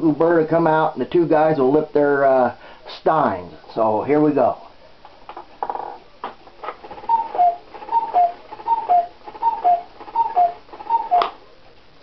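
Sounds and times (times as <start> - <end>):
cuckoo clock two-note call: 7.1 - 11.4.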